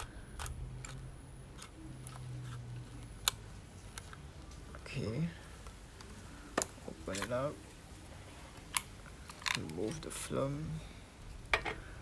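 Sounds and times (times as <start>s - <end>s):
camera rewind knob clicking: 0.0s - 1.0s.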